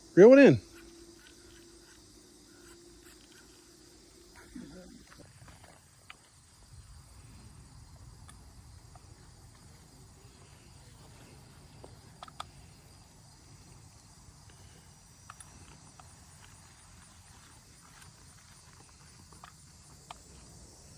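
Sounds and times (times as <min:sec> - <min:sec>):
insects chirping: 0:00.0 - 0:20.9
light clicks: 0:11.8 - 0:12.6.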